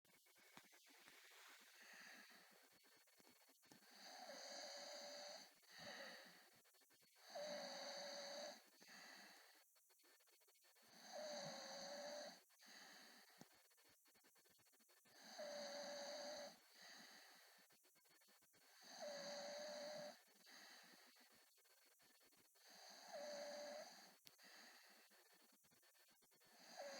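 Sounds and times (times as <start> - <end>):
soft breathing: 0.3 - 10.2, 10.8 - 14.0, 15.0 - 17.8, 18.6 - 26.9
man snoring: 4.0 - 6.2, 7.3 - 8.6, 11.0 - 12.4, 15.2 - 16.6, 18.8 - 20.2, 22.7 - 24.0, 26.6 - 26.9.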